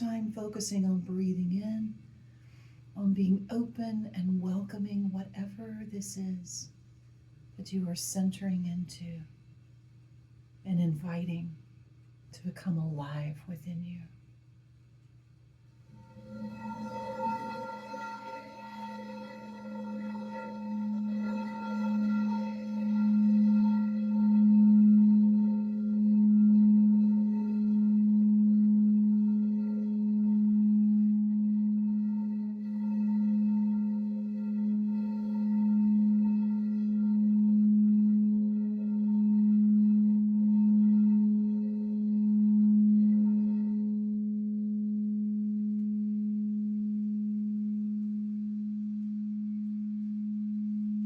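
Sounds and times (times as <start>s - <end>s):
singing bowl low tone: 0.0s - 2.0s, 15.8s - 51.0s.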